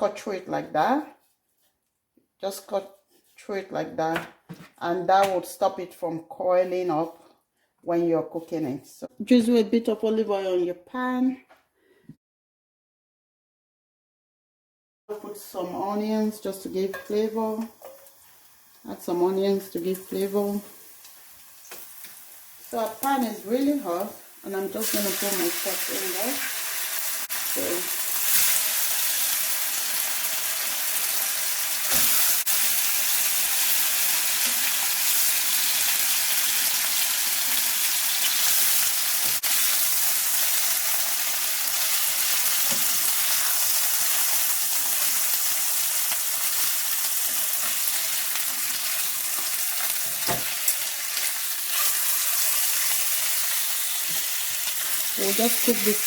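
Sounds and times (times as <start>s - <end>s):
meat sizzling in a pan: 17.6s - 56.0s.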